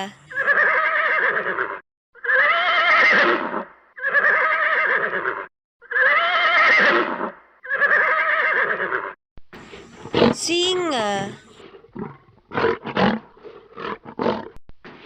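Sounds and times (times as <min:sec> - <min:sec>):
horse whinnying: 0:00.0 - 0:09.2.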